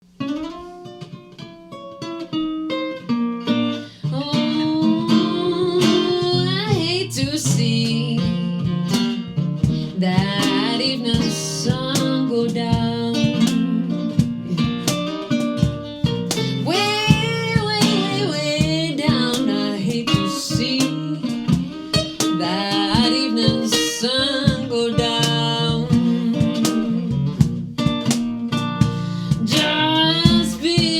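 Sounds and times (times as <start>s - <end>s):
plucked acoustic guitar: 0.1s - 30.9s
person singing: 4.0s - 8.6s, 16.4s - 27.4s, 28.8s - 30.9s.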